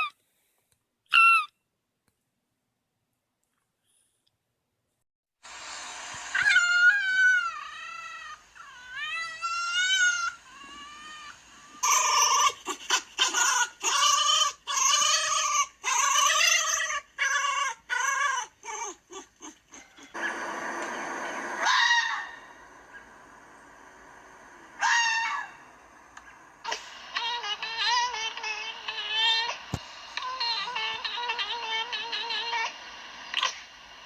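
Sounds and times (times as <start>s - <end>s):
fox yelping: 6.3s - 11.1s, 11.8s - 20.2s, 21.6s - 22.6s, 24.8s - 25.7s
fox whining calls: 6.3s - 20.2s, 24.7s - 29.6s.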